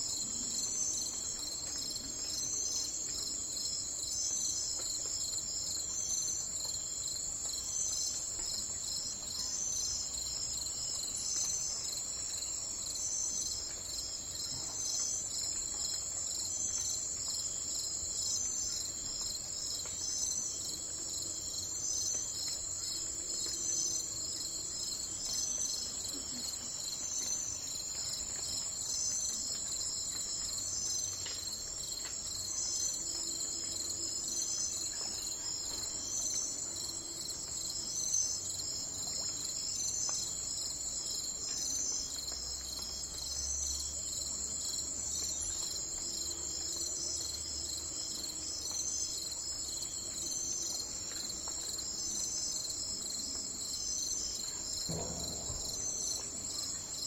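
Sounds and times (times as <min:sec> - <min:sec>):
insects trilling: 0:00.0 - 0:57.0
short insect chirp: 0:37.8 - 0:57.0.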